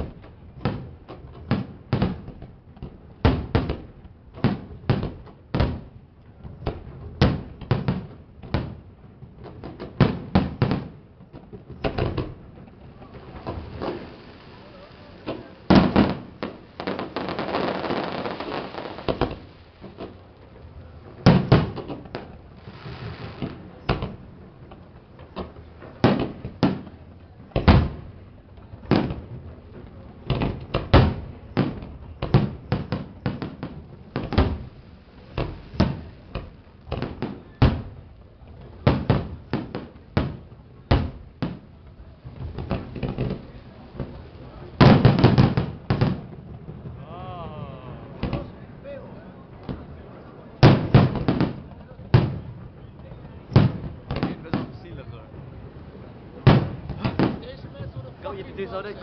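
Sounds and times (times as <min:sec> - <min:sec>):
fireworks bursting: 0:00.0 - 0:59.0
dense hiss: 0:11.8 - 0:24.5, 0:30.7 - 0:40.0.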